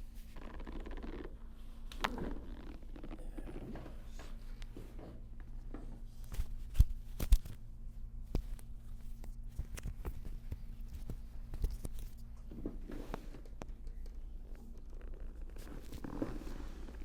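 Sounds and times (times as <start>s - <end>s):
clothing rustling: 15.2s - 17.0s.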